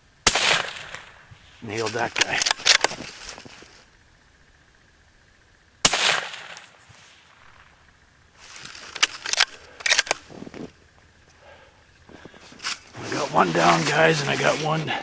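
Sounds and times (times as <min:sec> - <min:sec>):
rifle shot with echo: 0:00.2 - 0:01.3, 0:05.8 - 0:08.0
gun handling clicks: 0:02.1 - 0:03.0, 0:08.6 - 0:10.3.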